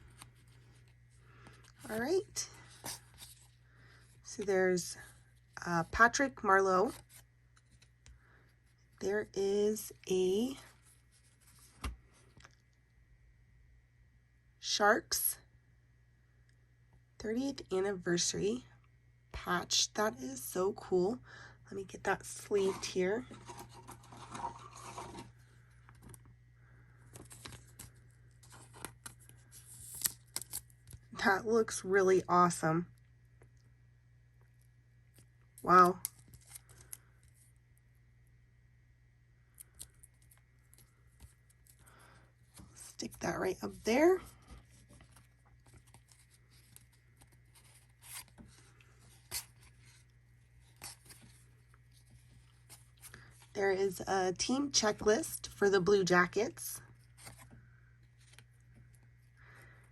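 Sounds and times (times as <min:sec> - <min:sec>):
trading cards rustling and sliding: 0:00.0 - 0:04.5, 0:06.8 - 0:08.8, 0:10.7 - 0:12.4, 0:22.2 - 0:26.4, 0:27.0 - 0:30.7, 0:39.6 - 0:53.5, 0:56.9 - 0:59.0
faint low hum: 0:00.0 - 0:59.9
plastic sleeve rustling: 0:22.6 - 0:26.3, 0:43.7 - 0:53.5.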